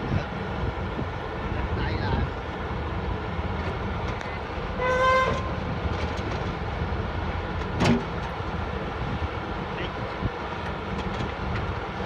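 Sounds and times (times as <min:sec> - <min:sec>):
diesel engine rumbling: 0:00.0 - 0:12.0
horn toot: 0:04.8 - 0:05.5.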